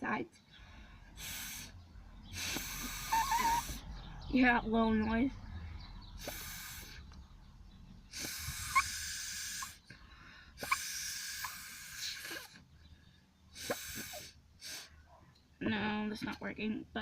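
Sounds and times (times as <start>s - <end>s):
short breath puffs: 0.5s - 4.0s, 5.6s - 7.2s, 8.1s - 15.2s
airy hisses through straw: 1.2s - 1.7s, 2.4s - 3.8s, 6.2s - 7.0s, 8.1s - 9.8s, 10.6s - 12.6s, 13.6s - 14.9s
straw reed squeak: 2.4s - 3.8s.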